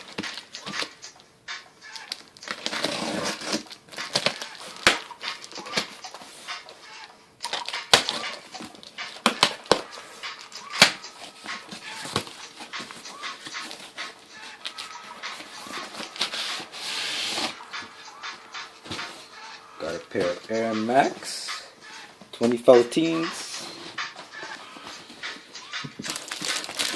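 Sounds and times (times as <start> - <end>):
cardboard rustling and scraping: 2.5 - 4.8, 11.2 - 17.6.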